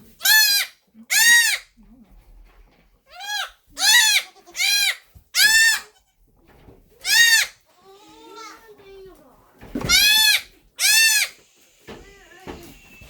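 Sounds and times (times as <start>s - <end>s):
goat kid bleating: 0.2s - 1.8s, 3.1s - 6.3s, 7.0s - 9.2s, 9.8s - 13.0s.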